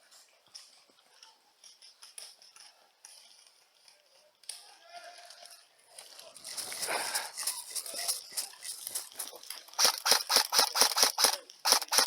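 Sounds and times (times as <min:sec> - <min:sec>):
airsoft gun firing: 0:09.8 - 0:12.0.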